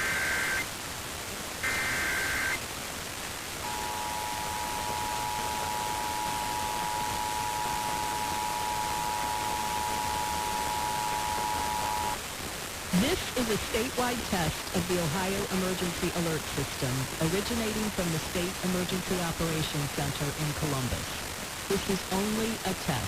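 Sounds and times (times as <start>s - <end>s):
warbling data tone: 0.0s - 0.7s, 1.6s - 2.6s, 3.6s - 12.2s
radio hiss: 0.0s - 23.0s
two-tone attention signal: 3.6s - 12.2s.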